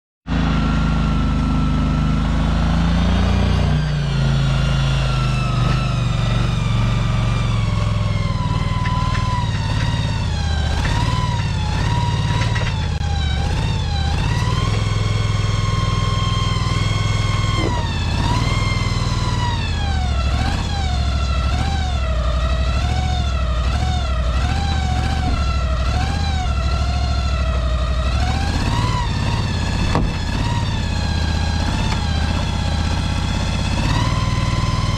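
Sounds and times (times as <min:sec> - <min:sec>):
wavering whine: 0:00.4 - 0:22.4
motor humming: 0:24.4 - 0:34.9.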